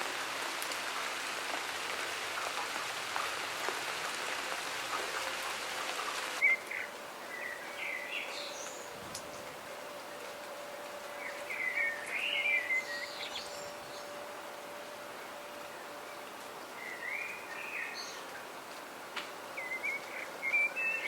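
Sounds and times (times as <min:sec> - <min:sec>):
steady rain: 0:00.0 - 0:21.0
songbird chirping: 0:06.4 - 0:18.6, 0:19.5 - 0:21.0.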